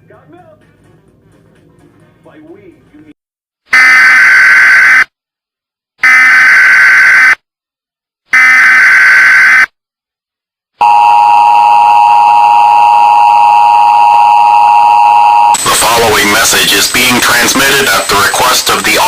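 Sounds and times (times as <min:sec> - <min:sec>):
data burst tones: 0:08.4 - 0:09.7, 0:15.1 - 0:19.0
two-tone attention signal: 0:10.8 - 0:16.1.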